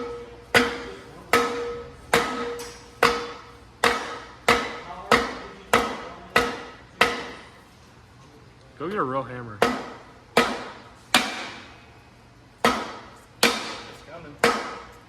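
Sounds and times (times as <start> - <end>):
hammer blows ringing on brake drum: 0.0 - 7.5.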